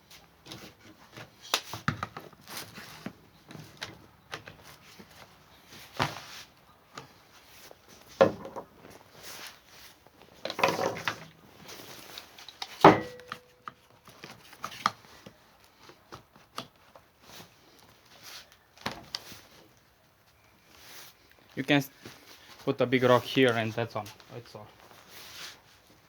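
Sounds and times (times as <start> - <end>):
objects knocking on hard surface: 8.2 - 8.7
sharp ringing knock: 12.9 - 13.5.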